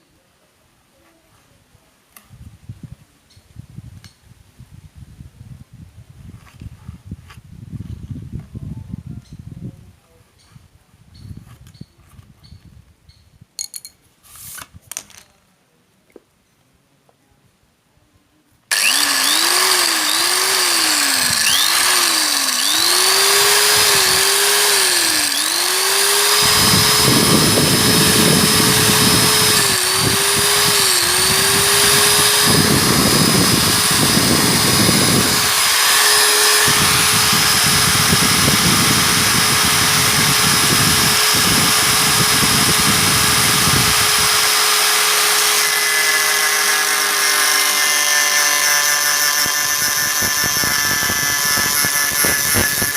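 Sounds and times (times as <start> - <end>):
angle grinder whining: 18.7 - 52.9
grinder disc cutting: 18.7 - 52.9.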